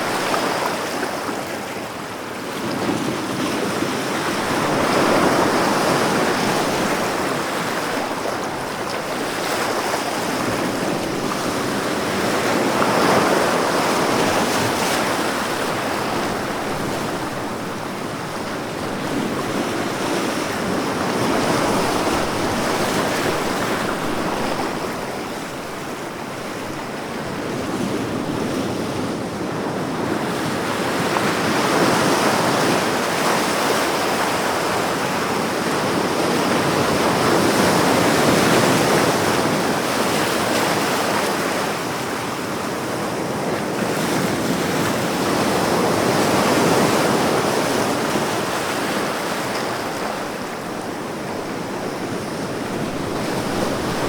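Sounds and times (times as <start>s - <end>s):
waves breaking: 0.0s - 54.0s.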